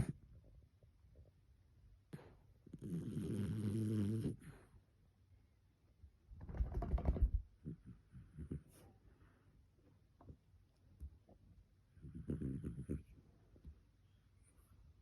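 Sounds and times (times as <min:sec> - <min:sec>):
dog snoring: 0:02.6 - 0:04.6, 0:12.0 - 0:13.2.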